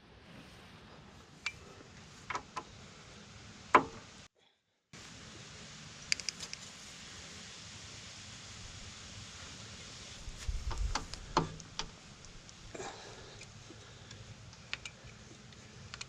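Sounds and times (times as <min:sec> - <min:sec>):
steady background hiss: 0:00.0 - 0:04.3, 0:05.0 - 0:16.0
sharp knocks and clicks: 0:03.7 - 0:04.0.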